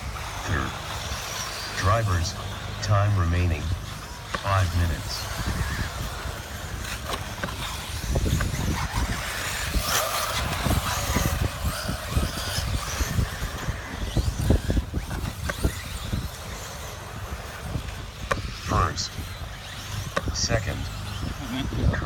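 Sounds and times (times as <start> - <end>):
rc car motors and tyres: 0.0 - 22.0.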